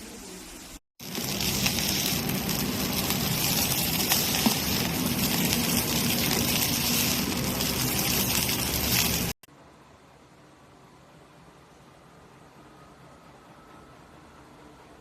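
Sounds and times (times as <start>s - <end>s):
food sizzling in frying pan: 0.0s - 9.5s.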